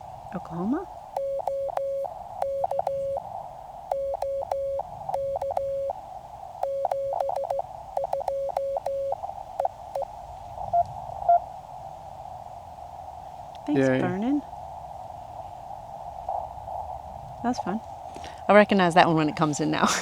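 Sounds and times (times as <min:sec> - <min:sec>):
receiver hiss: 0:00.0 - 0:18.7
faint blips: 0:00.4 - 0:10.2
key clicks: 0:01.2 - 0:03.1, 0:03.9 - 0:05.9, 0:06.6 - 0:09.0
morse code tone: 0:01.2 - 0:03.2, 0:03.9 - 0:06.0, 0:06.6 - 0:10.1.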